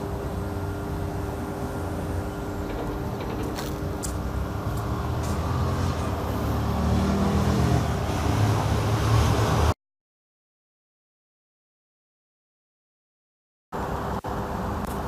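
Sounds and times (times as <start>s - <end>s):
vehicle engine rumble: 0.0s - 9.7s.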